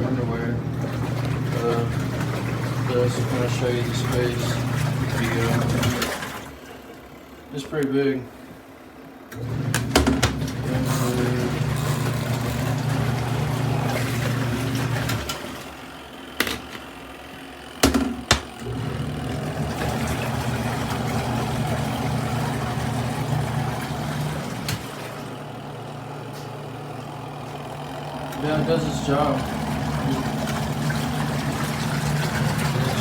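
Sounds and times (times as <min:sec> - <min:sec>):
washing machine motor humming: 0:00.0 - 0:33.0
sharp knocks: 0:17.8 - 0:18.6.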